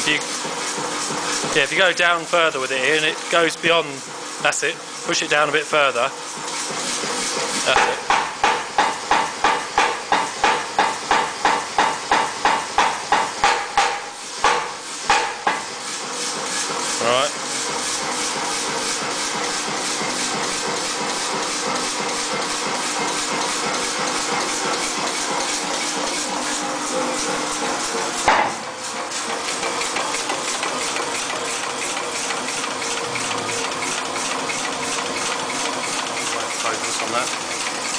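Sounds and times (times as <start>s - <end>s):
power hammer clattering: 29.2s - 37.9s.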